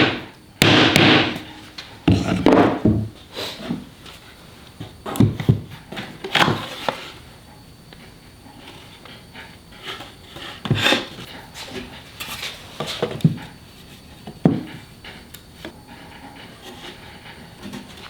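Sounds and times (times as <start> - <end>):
sharp wooden knocks: 0.0 - 1.5
plywood scraping and rubbing: 2.1 - 2.9.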